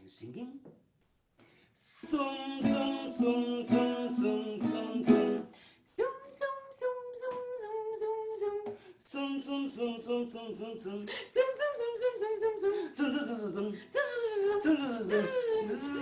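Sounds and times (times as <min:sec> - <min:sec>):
acoustic string instrument strummed: 0:02.0 - 0:05.5.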